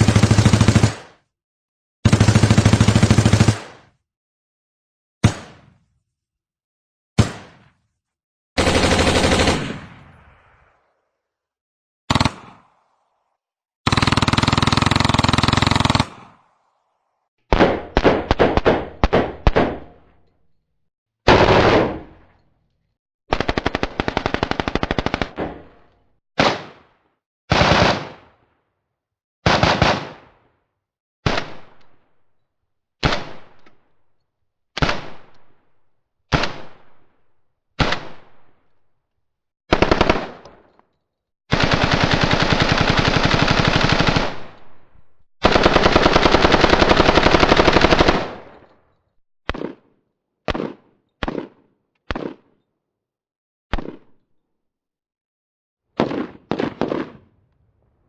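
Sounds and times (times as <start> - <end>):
automatic rifle fire: 8.6 - 10.2, 17.5 - 20.0, 21.3 - 22.2, 27.5 - 28.3, 29.4 - 30.3, 39.7 - 40.7, 45.4 - 48.7, 50.5 - 52.4, 56.0 - 57.4.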